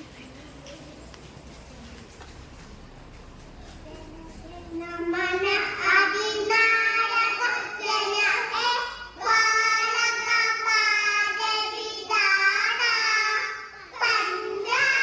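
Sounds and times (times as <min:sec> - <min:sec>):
child singing: 0:03.8 - 0:15.0.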